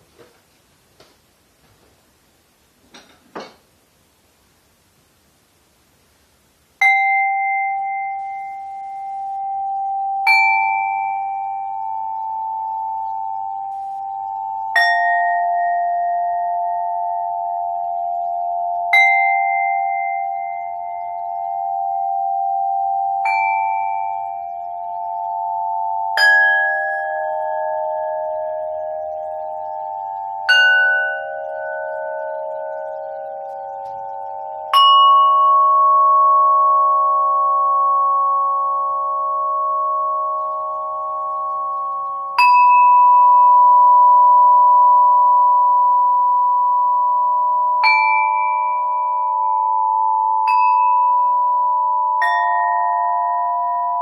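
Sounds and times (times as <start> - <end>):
bell-like instrument ringing: 29.3 - 54.0.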